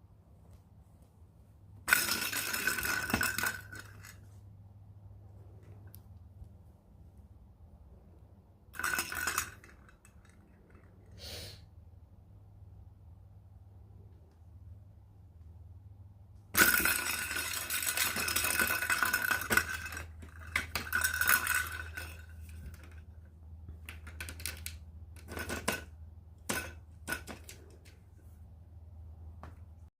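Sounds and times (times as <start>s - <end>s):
clatter of hard objects: 1.9s - 4.2s, 8.8s - 11.0s, 16.6s - 28.0s
clinks and knocks: 23.8s - 28.0s.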